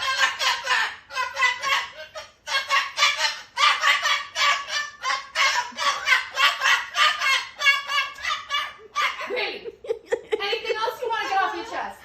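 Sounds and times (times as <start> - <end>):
parrot squawking: 0.0 - 9.5.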